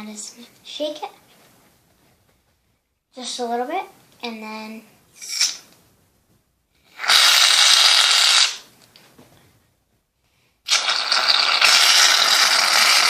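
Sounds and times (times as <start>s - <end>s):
shaving cream can spraying: 10.7s - 13.0s.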